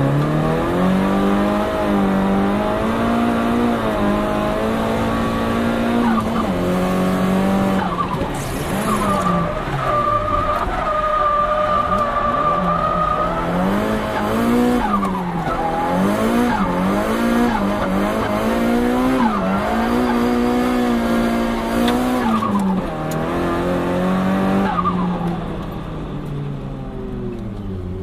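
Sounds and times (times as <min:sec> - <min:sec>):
car engine revving high: 0:00.0 - 0:10.3, 0:11.7 - 0:25.8.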